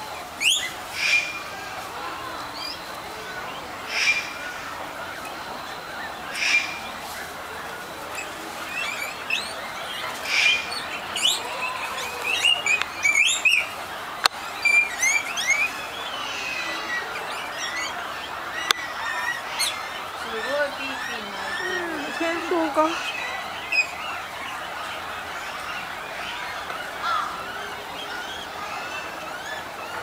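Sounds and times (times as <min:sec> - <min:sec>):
guinea pigs squeaking: 0:00.3 - 0:30.0
loud squawk: 0:03.8 - 0:04.9, 0:06.2 - 0:06.9, 0:08.8 - 0:30.0.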